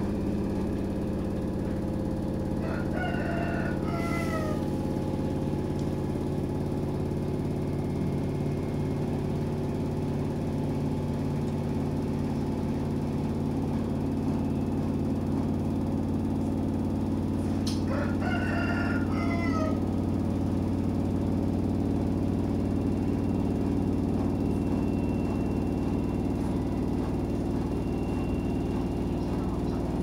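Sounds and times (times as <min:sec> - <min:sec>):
washing machine motor humming: 0:00.0 - 0:30.0
rooster crowing: 0:02.5 - 0:05.0, 0:17.8 - 0:20.2.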